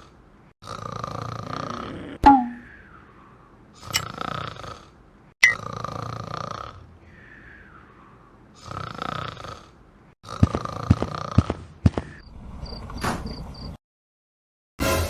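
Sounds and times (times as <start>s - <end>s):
cartoon snoring: 0.0s - 2.2s, 3.8s - 6.9s, 8.6s - 11.7s.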